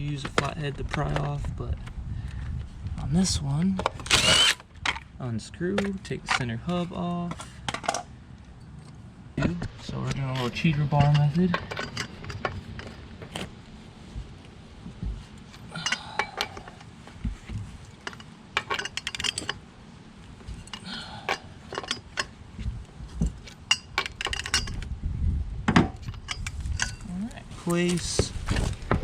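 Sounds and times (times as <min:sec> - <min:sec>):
metal tools clinking on lug nuts: 0:10.1 - 0:13.4, 0:15.5 - 0:17.0, 0:17.8 - 0:19.7, 0:20.3 - 0:22.4, 0:23.1 - 0:24.9, 0:25.9 - 0:27.1.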